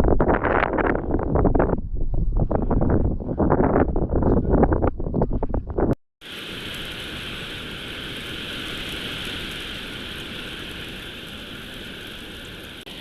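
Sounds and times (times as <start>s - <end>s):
wind buffeting microphone: 0.0s - 13.0s
steady rain falling: 6.2s - 13.0s.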